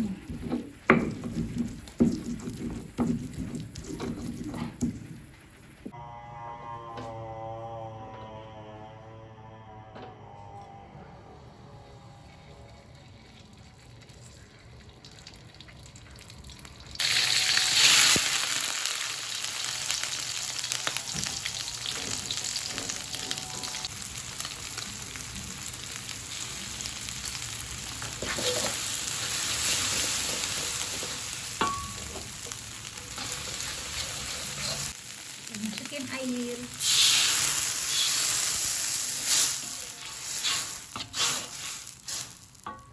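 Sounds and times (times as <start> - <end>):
spice paste sizzling in oil: 16.8 - 42.8.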